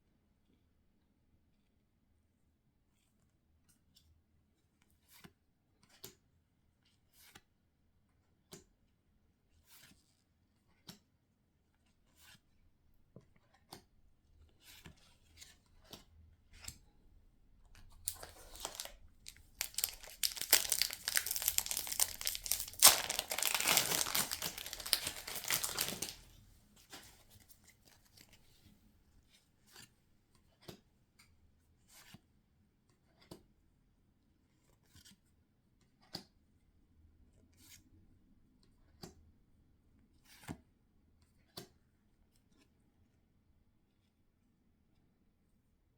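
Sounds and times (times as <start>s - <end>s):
plastic packaging tearing: 18.0s - 26.3s.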